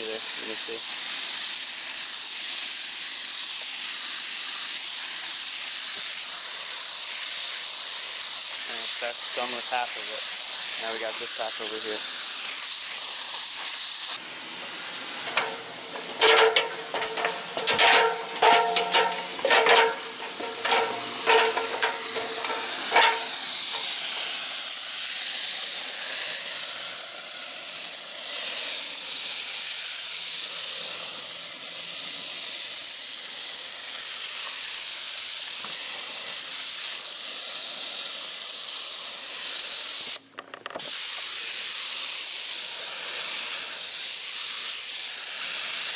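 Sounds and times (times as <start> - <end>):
spray gun hissing: 0.0 - 40.2, 40.8 - 45.9
short ringing knocks: 15.3 - 23.9.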